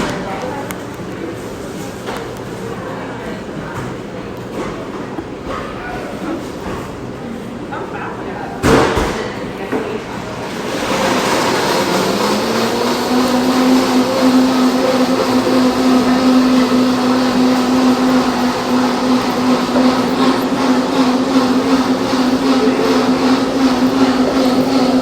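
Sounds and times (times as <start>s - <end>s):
machine motor hum: 10.5s - 25.0s.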